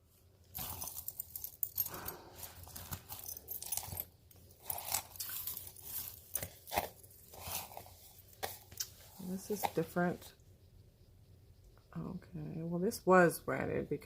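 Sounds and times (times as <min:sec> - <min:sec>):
rustling: 0:00.1 - 0:10.4
beads and chains rattling: 0:00.4 - 0:08.2.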